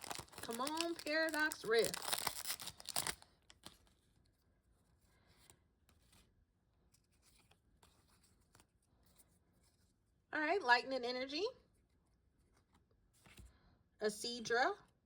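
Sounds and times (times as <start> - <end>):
foil wrapper tearing: 0.0 - 3.9
cards rustling and tapping: 0.0 - 4.1, 6.9 - 9.3.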